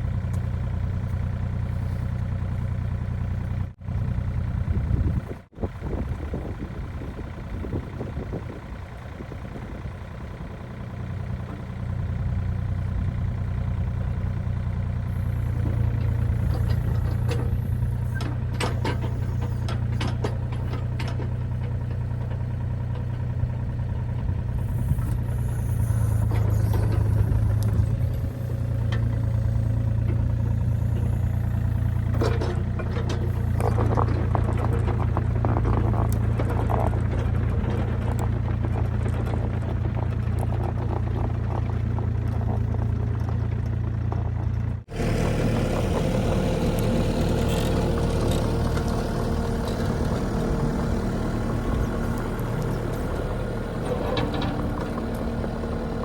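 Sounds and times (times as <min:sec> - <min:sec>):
large engine idling: 0:00.0 - 0:56.0
clicks and rattles: 0:26.2 - 0:44.8, 0:46.7 - 0:55.5.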